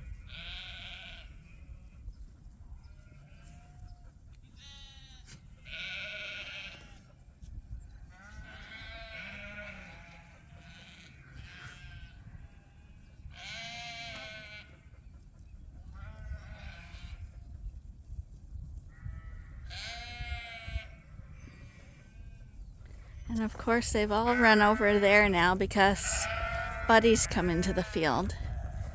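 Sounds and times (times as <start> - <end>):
lambs bleating: 0.1 - 1.6, 4.6 - 7.0, 8.1 - 14.8, 16.0 - 17.2, 19.2 - 22.4, 23.7 - 28.9.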